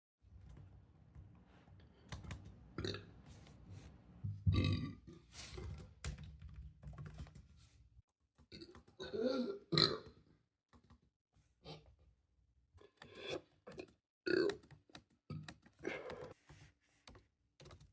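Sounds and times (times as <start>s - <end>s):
person burping: 4.5s - 5.1s, 9.0s - 10.2s, 14.3s - 14.6s.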